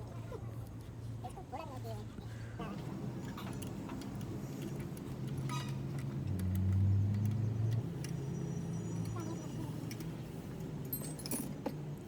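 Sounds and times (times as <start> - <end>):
metallic clinks of hand tools: 10.9 - 11.7.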